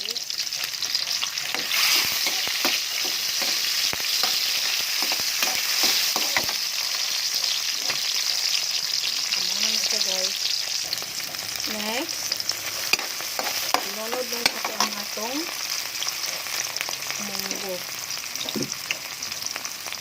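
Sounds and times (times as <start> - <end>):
vegetables sizzling in hot oil: 0.0 - 20.0.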